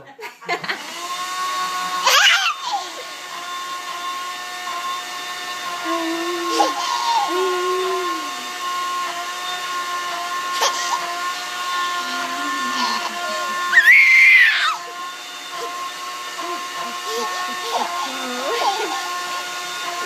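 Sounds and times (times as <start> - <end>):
kitchen blender running: 0.5 - 20.0
small child squealing: 2.1 - 3.0, 5.9 - 8.4, 13.7 - 14.9.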